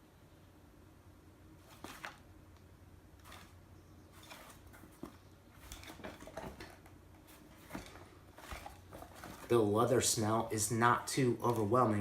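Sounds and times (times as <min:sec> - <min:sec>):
soft handling rustles and taps: 0:01.6 - 0:09.7.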